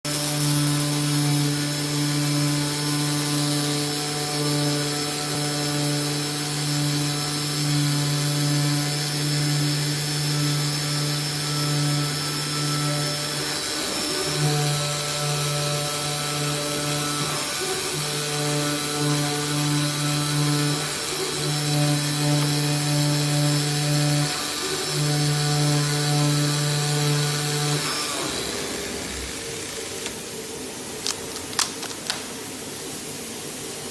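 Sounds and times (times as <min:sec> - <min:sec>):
cutting machine humming: 0:00.1 - 0:32.4.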